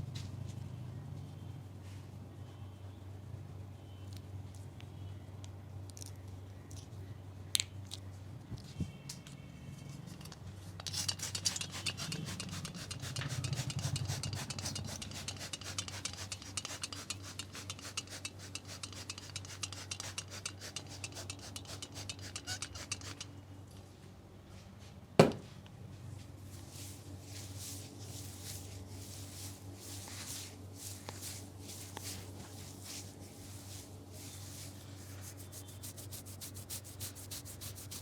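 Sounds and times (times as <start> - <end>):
hands rubbing hair and scalp: 26.6 - 38.0.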